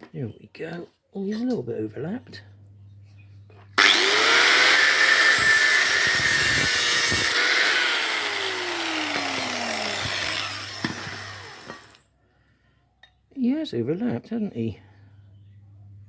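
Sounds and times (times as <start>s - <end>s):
angle grinder running: 3.8s - 12.0s.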